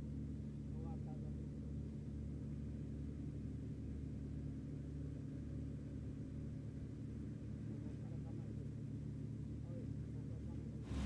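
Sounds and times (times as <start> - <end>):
harvesting machine engine humming: 10.8 - 11.0.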